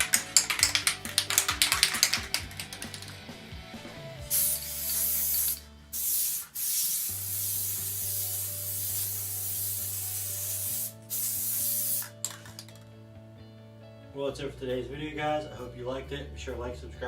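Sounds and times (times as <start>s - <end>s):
aerosol can spraying: 0.0s - 3.1s, 4.3s - 12.7s.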